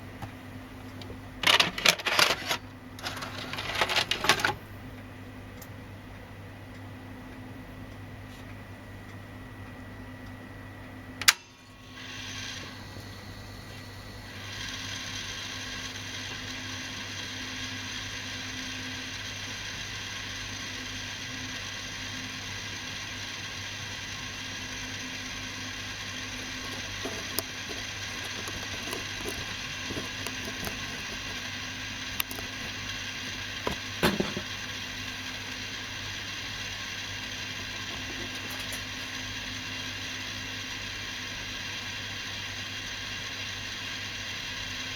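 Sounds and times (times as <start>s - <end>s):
sharp mechanical click: 11.2s - 11.6s
tape spooling with grinding hiss: 11.8s - 44.9s
small clicks and knocks: 26.4s - 31.5s, 32.2s - 32.9s.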